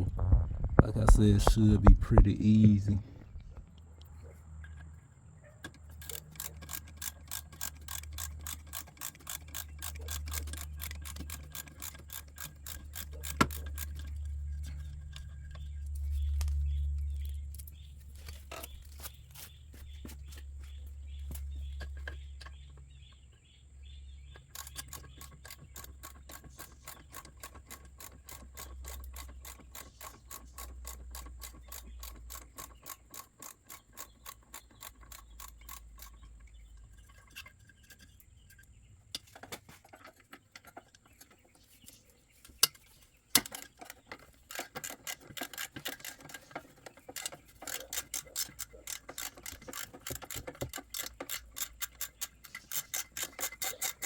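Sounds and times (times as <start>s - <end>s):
socket ratchet clicking: 5.8s - 17.7s, 24.4s - 36.9s, 43.4s - 54.0s.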